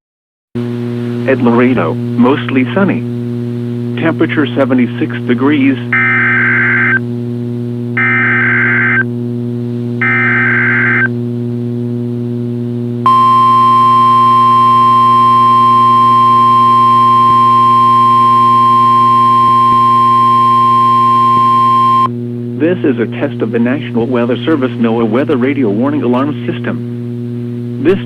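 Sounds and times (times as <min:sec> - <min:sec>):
low steady hum: 0:00.6 - 0:28.0
steady warning alarm tone: 0:05.9 - 0:07.0, 0:08.0 - 0:09.0, 0:10.0 - 0:11.1, 0:13.1 - 0:22.1.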